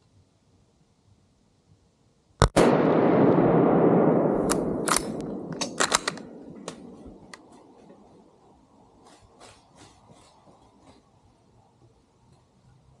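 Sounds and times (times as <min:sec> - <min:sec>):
gunshot echoing: 0:02.4 - 0:08.0
sharp clicks: 0:04.5 - 0:07.5.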